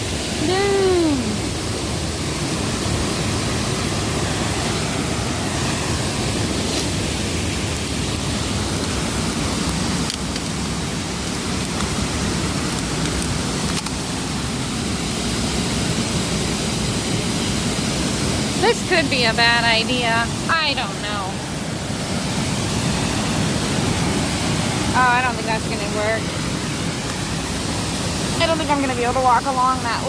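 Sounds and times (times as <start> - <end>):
waterfall roaring: 0.0 - 30.0.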